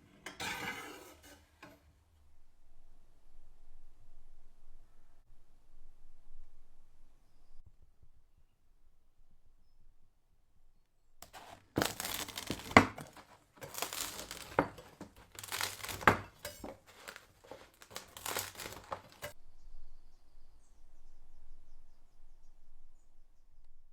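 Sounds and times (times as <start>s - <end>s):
crusty bread being sliced: 11.2s - 19.4s.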